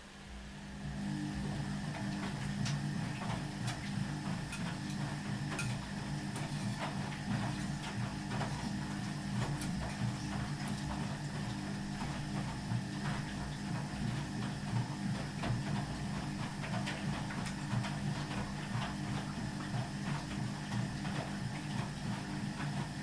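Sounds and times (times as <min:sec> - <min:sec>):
washing machine humming: 0:00.0 - 0:23.0.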